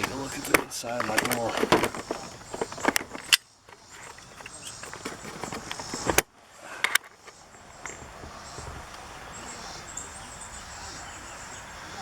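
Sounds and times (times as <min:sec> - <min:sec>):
sharp clicks: 0:00.0 - 0:08.0
crickets chirping: 0:00.0 - 0:12.0.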